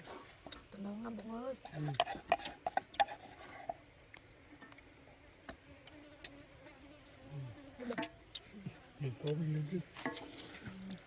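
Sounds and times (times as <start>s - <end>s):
insect buzzing: 4.7s - 11.0s.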